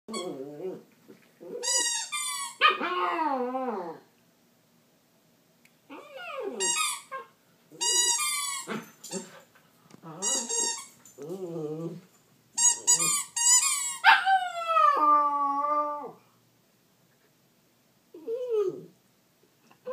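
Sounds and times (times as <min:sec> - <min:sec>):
dog whining and yelping: 0:00.1 - 0:04.1, 0:05.9 - 0:09.4, 0:10.0 - 0:12.0, 0:12.7 - 0:16.2.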